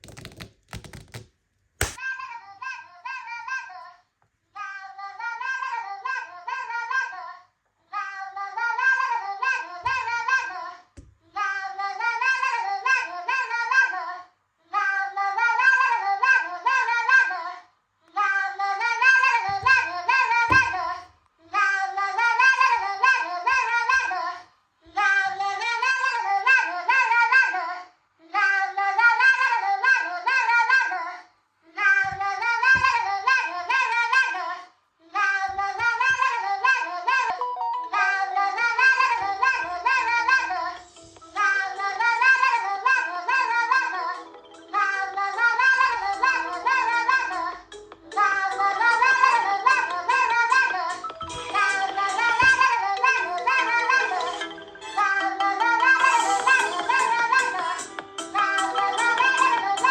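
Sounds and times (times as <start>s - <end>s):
smartphone alarm tone: 37.4s - 38.0s.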